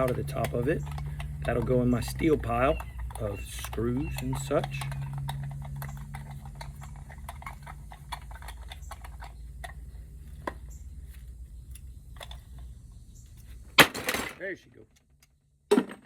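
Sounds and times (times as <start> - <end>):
hand tool metallic clicks: 0.0 - 9.8.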